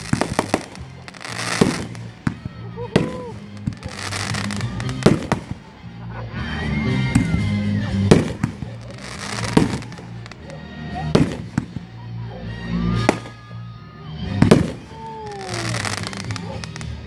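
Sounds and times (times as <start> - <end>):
fireworks whistles: 0.0 - 2.4, 3.0 - 5.7, 6.9 - 11.8, 12.8 - 13.6, 14.4 - 17.0
fireworks bangs: 0.0 - 5.7, 7.1 - 11.9, 12.9 - 13.6, 14.3 - 17.0
fireworks crackling: 0.0 - 5.8, 7.0 - 12.0, 12.8 - 13.6, 14.3 - 17.0
music playing: 0.0 - 17.0.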